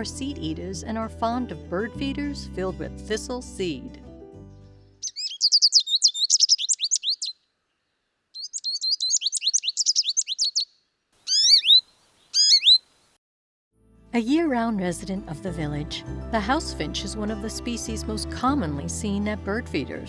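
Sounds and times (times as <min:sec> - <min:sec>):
bird rising calls: 0:05.0 - 0:07.4, 0:08.4 - 0:13.1
goldfinch twittering: 0:05.0 - 0:07.4, 0:08.4 - 0:13.0.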